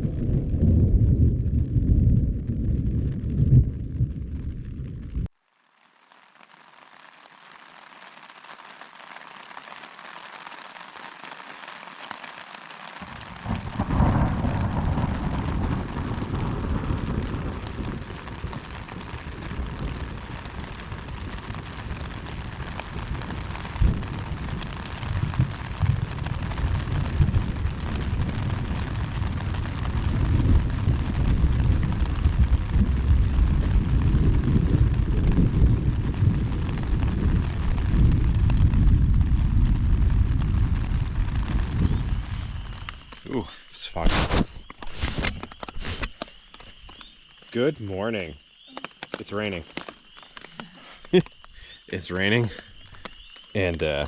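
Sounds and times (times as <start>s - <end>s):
thunder rumbling: 0.0s - 5.3s, 12.9s - 44.7s
steady rain: 0.0s - 54.0s.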